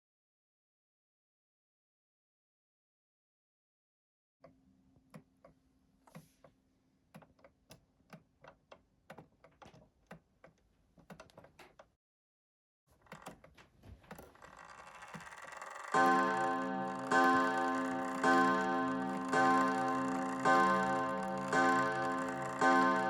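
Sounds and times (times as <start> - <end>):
small metal parts clicking: 14.1 - 23.0.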